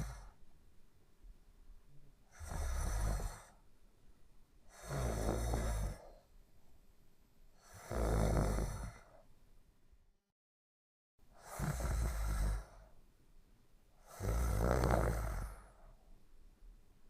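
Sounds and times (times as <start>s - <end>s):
person snoring: 0.0s - 0.4s, 2.3s - 3.6s, 4.7s - 6.3s, 7.6s - 9.2s, 11.4s - 12.9s, 14.0s - 15.9s.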